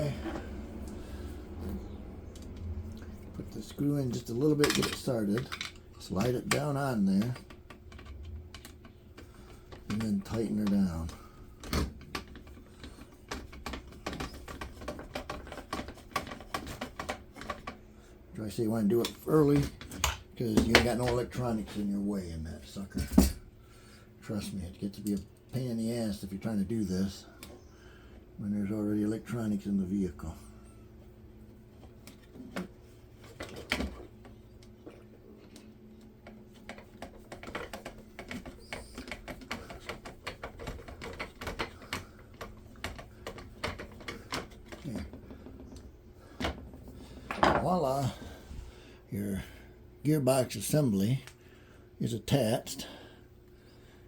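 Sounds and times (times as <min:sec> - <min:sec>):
parts being handled: 0:00.0 - 0:18.2, 0:31.0 - 0:48.8.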